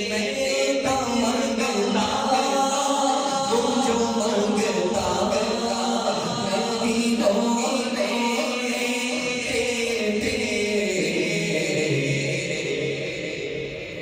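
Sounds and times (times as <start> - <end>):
man singing through pa with echo: 0.0 - 14.0.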